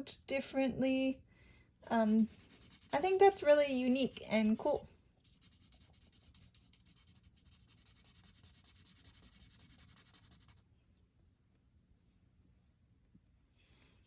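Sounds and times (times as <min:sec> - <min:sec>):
colouring tool scratching paper: 0:01.9 - 0:10.6.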